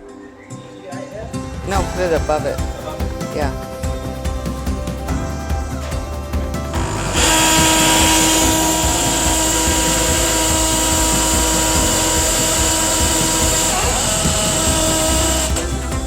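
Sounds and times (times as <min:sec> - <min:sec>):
electric motor whining: 0:06.6 - 0:16.0.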